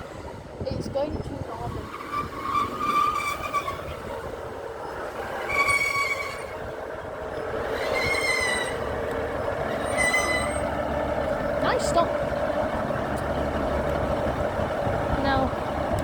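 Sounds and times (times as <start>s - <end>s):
train drone: 0.0s - 16.0s
train wheels squealing: 1.6s - 10.8s.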